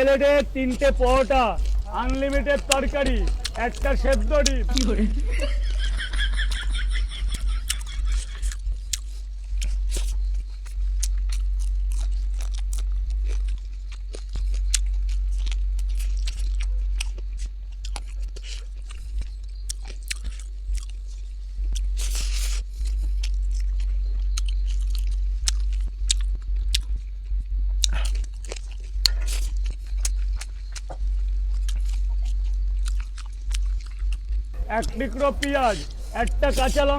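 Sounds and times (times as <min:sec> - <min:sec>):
low hum: 0:00.0 - 0:19.7, 0:20.4 - 0:36.9
chewing and crunching food: 0:00.0 - 0:36.9.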